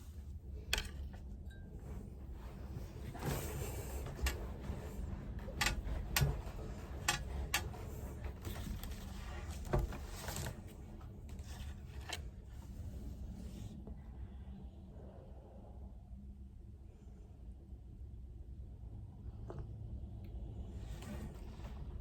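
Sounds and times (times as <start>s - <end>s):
sharp clicks and knocks: 0.7s - 1.2s, 3.1s - 10.6s.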